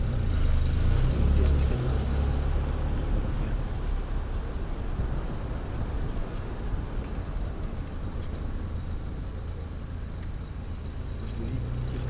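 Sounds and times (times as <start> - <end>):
car engine and road noise: 0.0 - 12.0.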